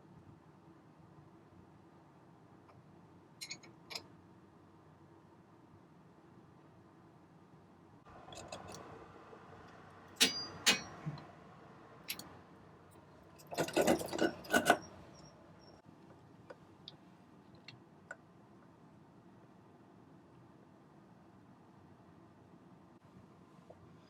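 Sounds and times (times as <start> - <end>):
hand tools and metal parts clinking: 3.4 - 4.1, 10.2 - 11.1, 12.1 - 12.3, 13.3 - 15.3.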